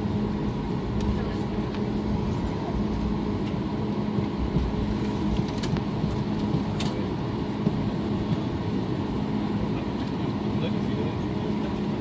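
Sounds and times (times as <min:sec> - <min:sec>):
airliner engines humming: 0:00.0 - 0:12.0.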